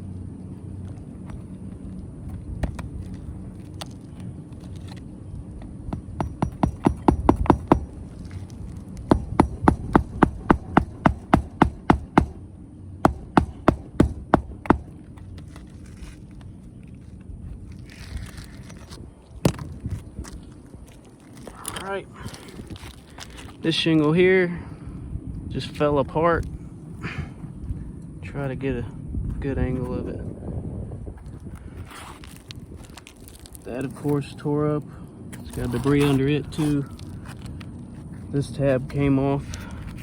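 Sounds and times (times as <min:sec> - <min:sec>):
hammer striking nail: 0:05.9 - 0:08.0, 0:09.1 - 0:12.4, 0:13.0 - 0:14.9.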